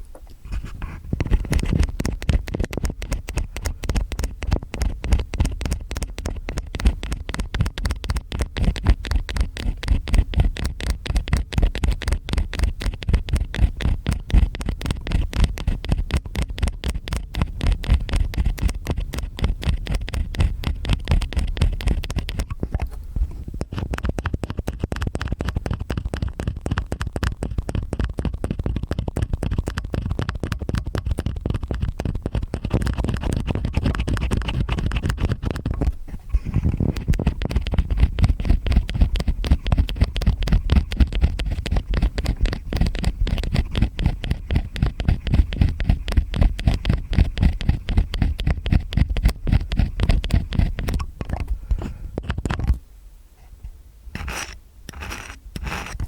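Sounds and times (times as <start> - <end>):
metal ear picks scraping: 54.2 - 56.0.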